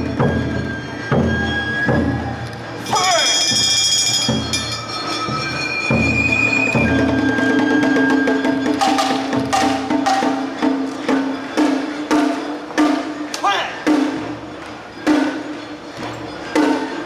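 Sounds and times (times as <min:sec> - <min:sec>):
flute notes over drone: 0:00.0 - 0:04.3, 0:05.4 - 0:09.0
sharp percussion strikes: 0:00.0 - 0:17.0.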